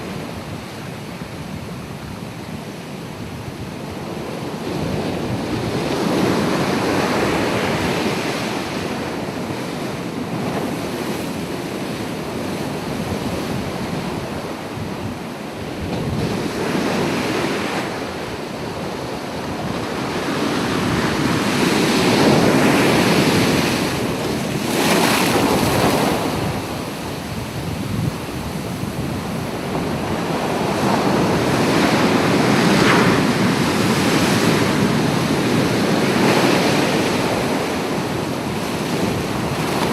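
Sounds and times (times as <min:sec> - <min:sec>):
wind on microphone: 0:00.0 - 0:39.9
waves breaking: 0:15.9 - 0:39.9.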